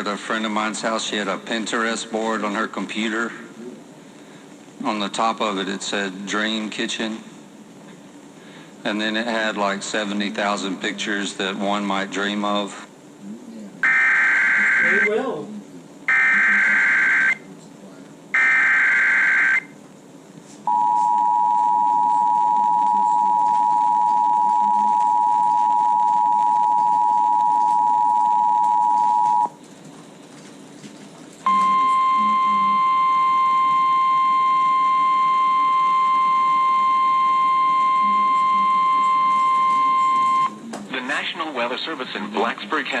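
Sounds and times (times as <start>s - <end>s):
single-pitched alarm tone: 18.4s - 19.7s, 31.5s - 40.6s
two-tone alert beep: 31.5s - 40.6s.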